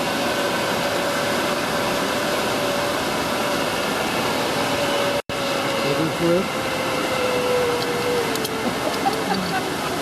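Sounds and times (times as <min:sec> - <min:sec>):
waterfall roaring: 0:07.8 - 0:10.0.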